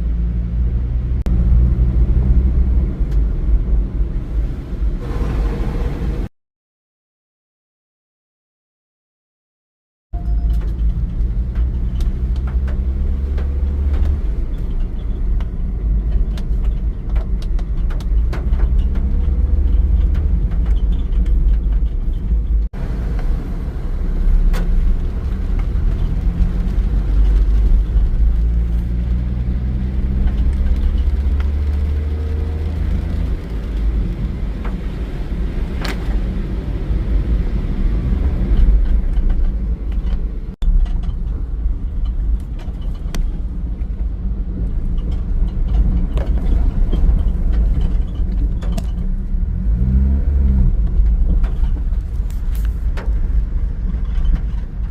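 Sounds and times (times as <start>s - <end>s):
low rumble: 0.0s - 6.3s
heavy rain: 4.2s - 6.3s, 22.8s - 28.8s.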